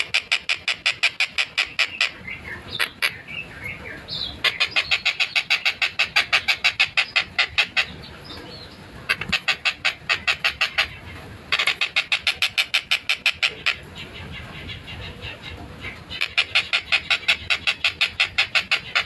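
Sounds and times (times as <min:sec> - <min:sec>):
kingfisher harsh rapid calls: 0:00.0 - 0:03.2, 0:04.4 - 0:08.0, 0:09.1 - 0:13.9, 0:16.1 - 0:19.0.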